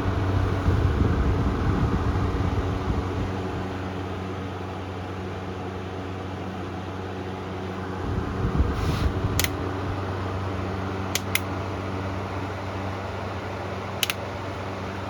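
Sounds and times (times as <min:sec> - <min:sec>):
table fan running: 0:00.0 - 0:15.0
sharp clicks: 0:09.4 - 0:09.6, 0:11.1 - 0:11.5, 0:14.0 - 0:14.2.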